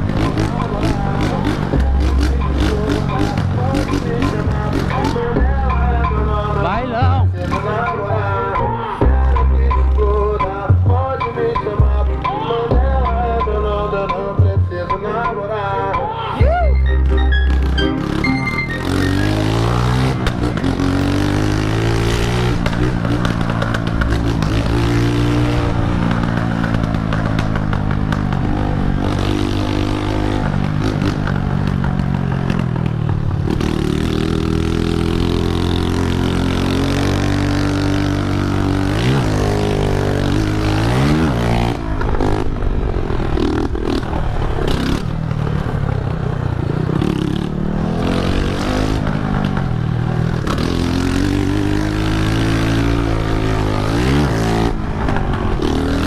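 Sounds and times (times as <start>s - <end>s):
motorcycle engine revving: 0.0s - 15.2s, 16.8s - 56.0s.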